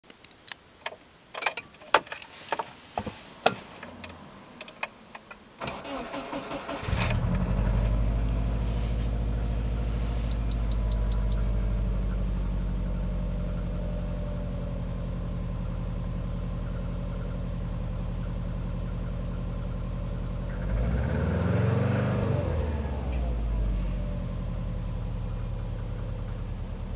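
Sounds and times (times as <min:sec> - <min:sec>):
car engine cranking and idling: 0:01.4 - 0:26.9
short high beeps: 0:10.3 - 0:11.4.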